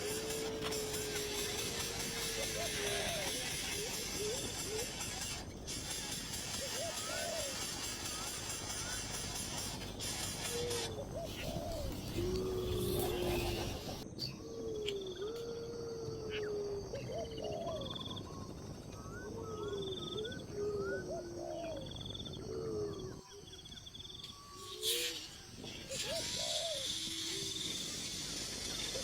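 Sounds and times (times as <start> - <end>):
steady hiss: 0.0 - 14.0, 24.4 - 29.0
birds calling and chirping: 0.0 - 29.0.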